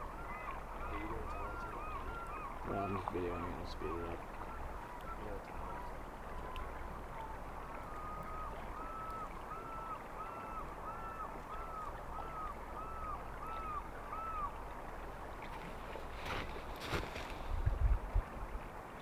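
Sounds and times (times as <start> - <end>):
animal calling: 0.2 - 4.1.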